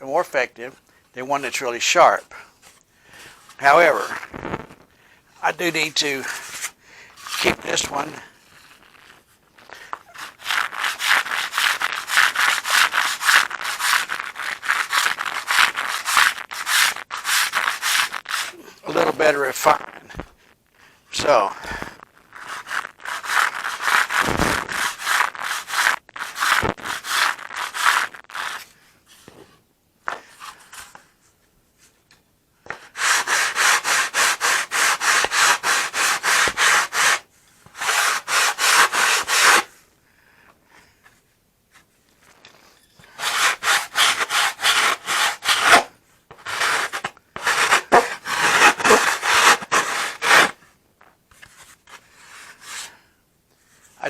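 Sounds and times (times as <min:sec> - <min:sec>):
sandpaper strokes on wood: 0:10.0 - 0:18.5, 0:22.4 - 0:28.6, 0:32.8 - 0:37.2, 0:37.8 - 0:39.7, 0:43.2 - 0:50.6.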